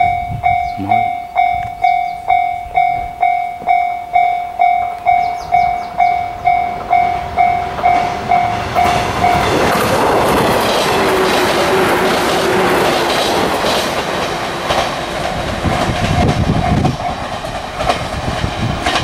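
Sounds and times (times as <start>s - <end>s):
level-crossing warning bell dinging: 0.0s - 12.8s, 15.9s - 17.9s
train running past: 0.0s - 19.0s.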